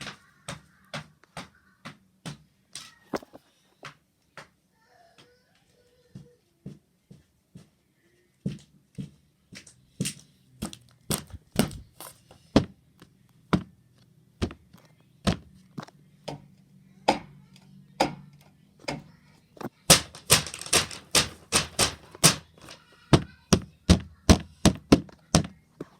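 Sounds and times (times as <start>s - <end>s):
sharp knocks: 19.9s - 22.8s.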